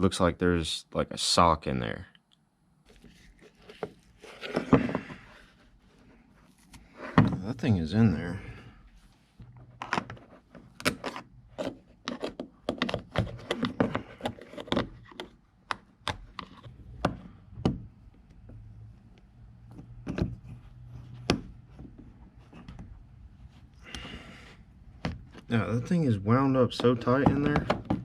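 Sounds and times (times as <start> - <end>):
hands working at a pump: 9.4 - 28.0.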